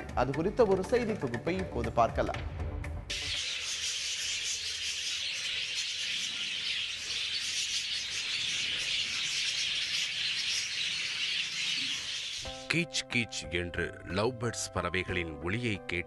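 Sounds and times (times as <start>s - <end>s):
flock of birds chirping: 3.1s - 12.7s.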